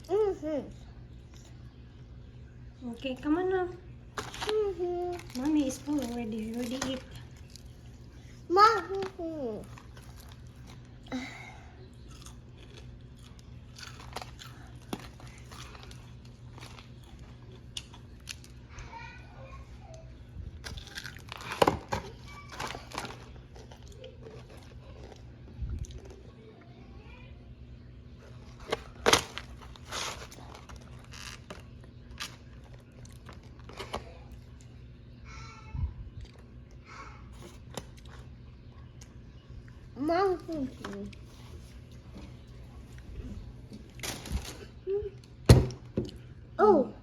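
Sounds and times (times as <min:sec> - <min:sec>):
low steady hum: 0:00.0 - 0:47.0
chewing and crunching: 0:04.1 - 0:11.2, 0:11.8 - 0:26.7, 0:28.2 - 0:35.0, 0:36.1 - 0:45.4
person eating crunchy food: 0:11.8 - 0:18.6, 0:20.6 - 0:26.3.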